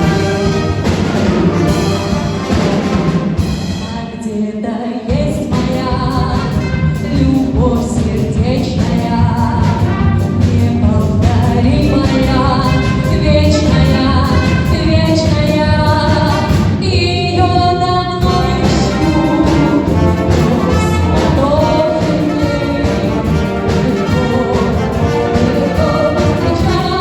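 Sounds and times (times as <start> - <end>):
orchestral accompaniment: 0.0 - 3.8, 9.3 - 16.8, 18.2 - 27.0
person singing: 3.8 - 27.0.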